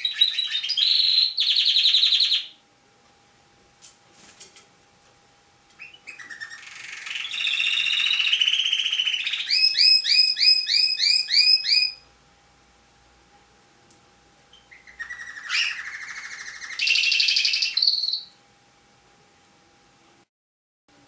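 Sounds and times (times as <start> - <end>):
canary singing: 0.0 - 2.6, 5.7 - 12.1, 14.5 - 18.4.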